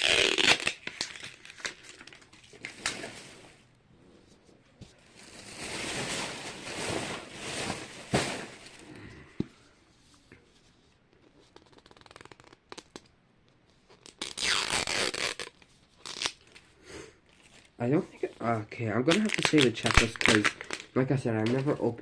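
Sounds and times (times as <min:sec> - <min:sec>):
plastic packaging ripping and rustling: 0:00.0 - 0:03.4, 0:05.1 - 0:08.8, 0:14.0 - 0:16.6, 0:19.1 - 0:21.0.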